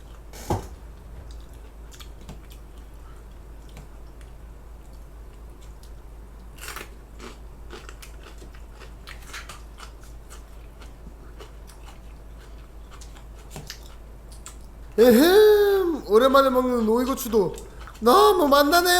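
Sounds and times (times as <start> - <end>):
crunching and chewing pepper: 1.3 - 15.0, 17.5 - 18.1.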